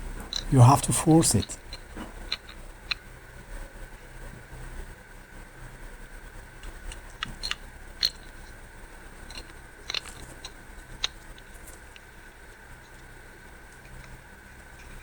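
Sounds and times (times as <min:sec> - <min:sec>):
small metal parts clicking: 0:06.6 - 0:08.6, 0:09.2 - 0:12.0.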